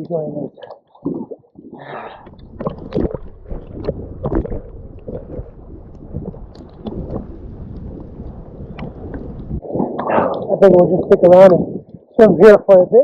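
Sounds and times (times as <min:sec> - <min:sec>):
wind rumble on microphone: 0:01.7 - 0:12.8
seawater splashing and sloshing: 0:02.2 - 0:09.7.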